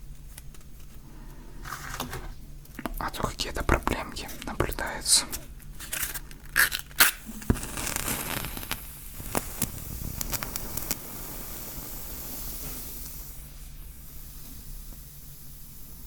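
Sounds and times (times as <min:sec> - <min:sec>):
match flame hissing: 0:00.3 - 0:16.0
match striking on matchbox: 0:03.8 - 0:12.0.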